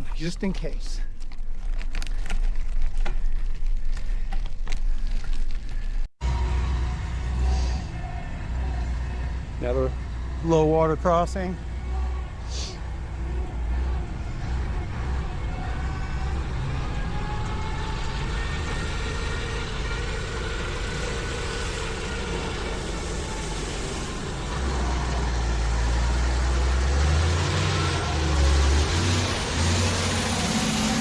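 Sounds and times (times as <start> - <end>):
tyres on gravel: 0.0 - 6.4.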